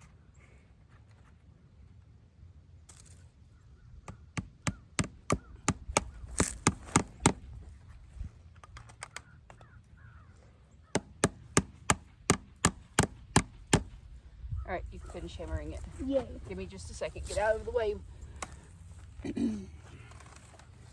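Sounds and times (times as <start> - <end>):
hammer striking staples into wood: 11.0 - 14.0.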